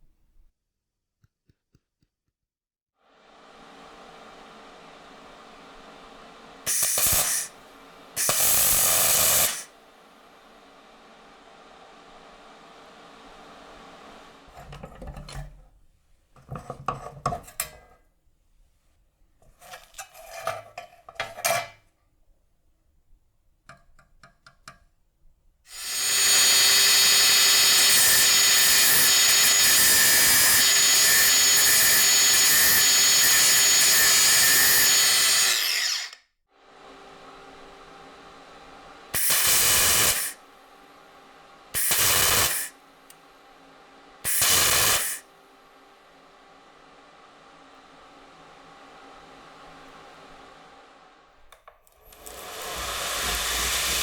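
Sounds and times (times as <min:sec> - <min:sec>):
power tool running: 0:03.3 - 0:09.8, 0:25.7 - 0:36.2, 0:36.8 - 0:40.5, 0:41.7 - 0:43.1, 0:44.1 - 0:45.3, 0:52.0 - 0:54.0
scraping and handling noises: 0:14.5 - 0:15.7, 0:16.3 - 0:18.1, 0:19.4 - 0:21.9.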